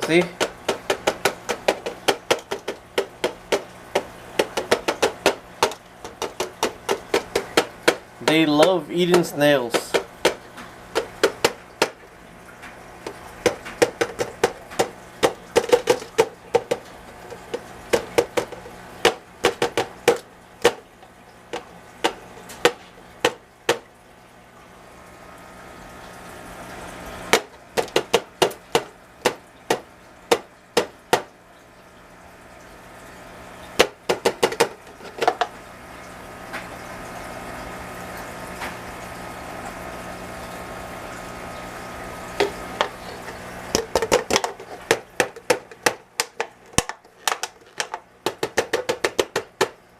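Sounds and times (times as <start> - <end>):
sharp clicks and taps: 0.0 - 12.0, 42.4 - 49.8.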